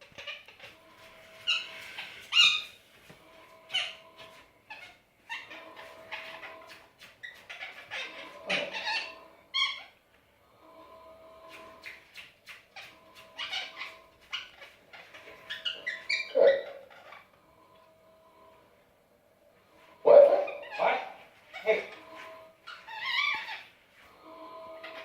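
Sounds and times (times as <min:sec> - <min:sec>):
parakeet chirping and chattering: 0:00.0 - 0:02.8, 0:03.6 - 0:10.0, 0:11.4 - 0:17.4, 0:20.0 - 0:23.7, 0:24.6 - 0:25.0
faint steady hum: 0:12.8 - 0:20.2.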